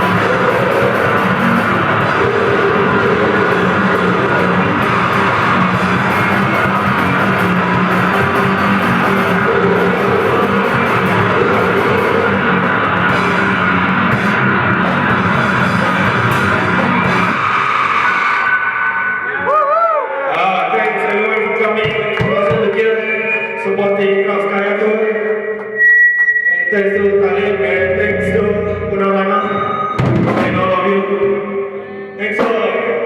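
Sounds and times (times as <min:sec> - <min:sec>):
fast blast-beat drumming: 0:00.0 - 0:18.5, 0:29.9 - 0:31.1
distorted guitar and bass: 0:00.0 - 0:19.6, 0:25.8 - 0:32.8.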